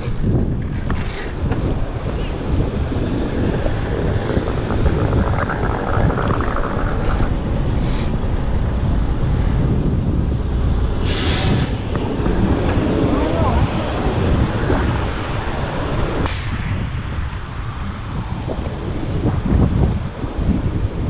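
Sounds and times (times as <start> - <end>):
vehicle noise: 0.0 - 21.0
wind buffeting microphone: 0.0 - 21.0
short hiss: 11.0 - 11.9.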